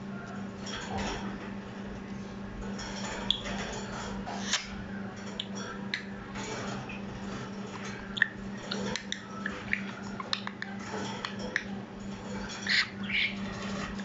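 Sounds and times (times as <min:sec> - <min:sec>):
parrot clicks and chirps: 0:08.2 - 0:11.7.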